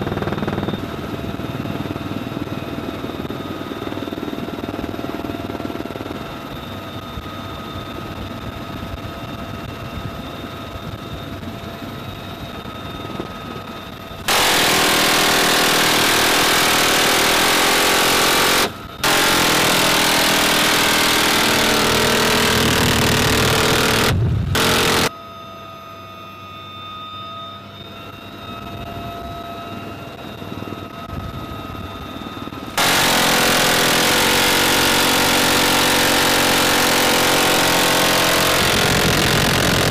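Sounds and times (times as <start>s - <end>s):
helicopter whine: 0.0s - 39.9s
rapid machine gun fire: 14.3s - 25.1s, 32.7s - 39.9s.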